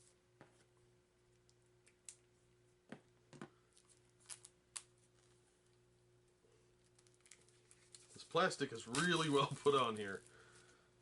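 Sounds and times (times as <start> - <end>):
faint low hum: 0.0 - 11.0
plastic wrap crinkling: 3.8 - 5.4, 6.8 - 10.3.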